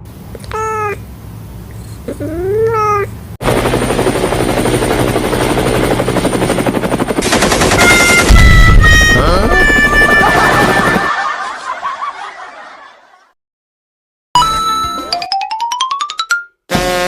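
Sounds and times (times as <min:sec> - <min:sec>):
cat-like meow: 0:00.5 - 0:01.0, 0:02.1 - 0:03.1
fast rattling clatter: 0:07.2 - 0:08.3.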